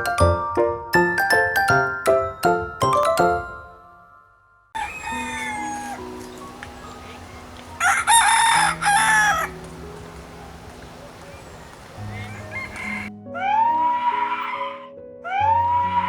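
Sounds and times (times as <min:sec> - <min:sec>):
rooster crowing: 0:04.8 - 0:14.3.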